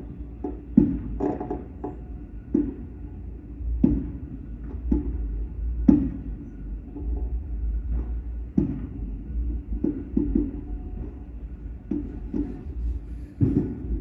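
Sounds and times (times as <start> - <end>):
steady low rumble: 2.0 - 14.0
fireworks thumping: 13.4 - 14.0.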